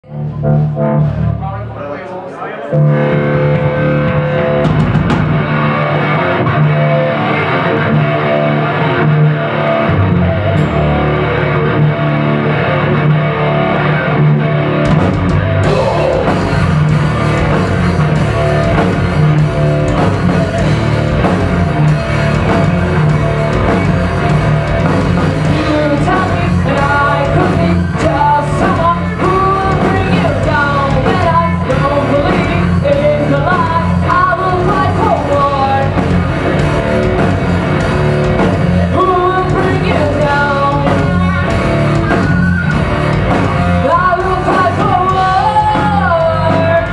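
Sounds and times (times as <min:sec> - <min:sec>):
bass guitar: 0:00.0 - 0:02.0, 0:02.7 - 0:46.9
electric guitar riff: 0:02.5 - 0:46.9
drums and cymbals: 0:02.9 - 0:05.9, 0:14.7 - 0:46.9
woman singing: 0:25.4 - 0:36.1, 0:38.9 - 0:41.5, 0:43.8 - 0:46.9.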